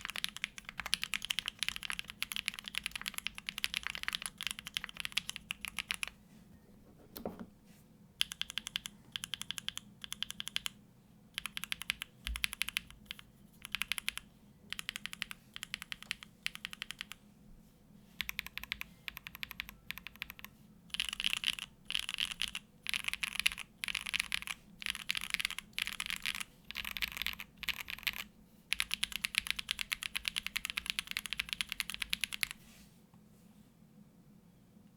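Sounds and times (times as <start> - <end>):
typing on mechanical keyboard: 0.0 - 6.2, 8.2 - 10.8, 11.4 - 17.2, 18.2 - 32.6.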